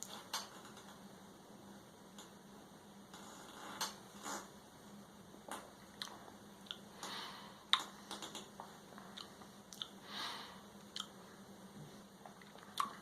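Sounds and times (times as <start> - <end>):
lip smacks and tongue clicks: 6.0 - 6.8, 9.2 - 10.0, 10.9 - 11.2, 12.3 - 13.0.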